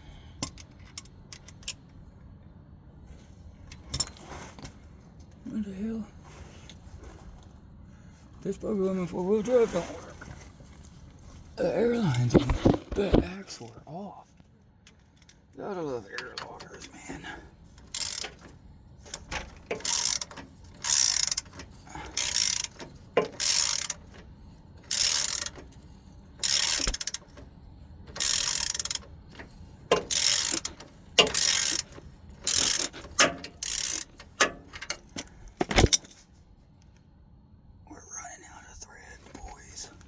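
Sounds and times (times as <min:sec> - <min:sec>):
ratchet wrench clicking: 0:17.8 - 0:18.5, 0:19.1 - 0:24.2, 0:24.8 - 0:25.8, 0:26.4 - 0:27.3, 0:28.1 - 0:29.1, 0:29.9 - 0:35.0.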